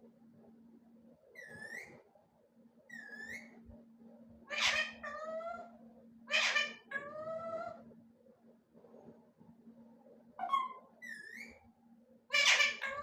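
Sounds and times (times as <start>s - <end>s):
faint steady hum: 0.0s - 13.0s
parrot screeching: 4.5s - 5.7s, 6.3s - 7.8s, 10.4s - 11.6s, 12.3s - 13.0s.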